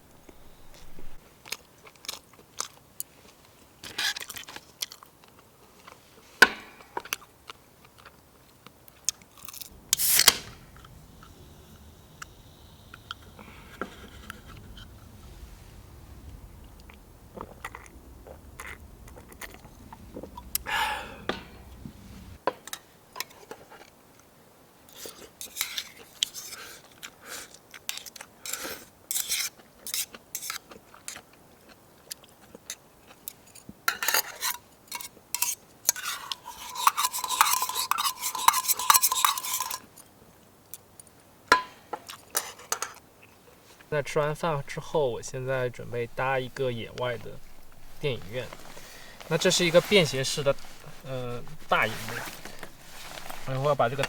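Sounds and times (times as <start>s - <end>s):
utensils clinking and scraping dishes: 33.9s - 39.9s, 44.0s - 54.0s.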